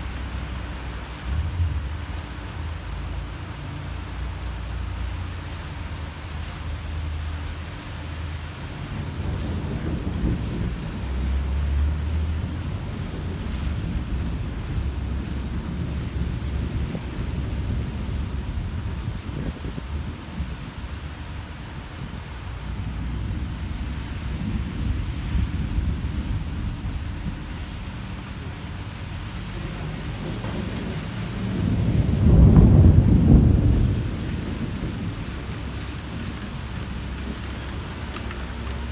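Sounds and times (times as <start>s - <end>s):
steady rain: 0.0s - 38.9s
thunder rumbling: 8.4s - 38.9s.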